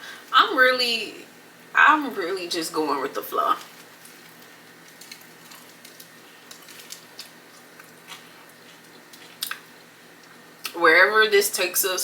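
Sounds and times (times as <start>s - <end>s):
person chewing: 3.8s - 10.4s.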